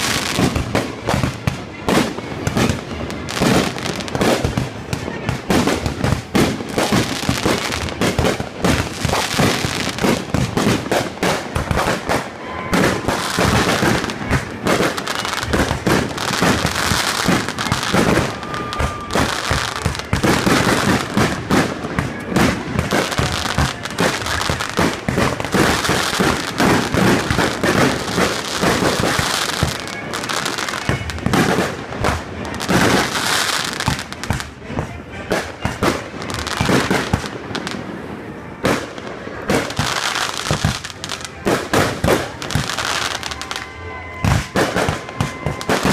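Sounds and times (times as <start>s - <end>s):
fireworks barrage bangs: 0.0s - 45.9s.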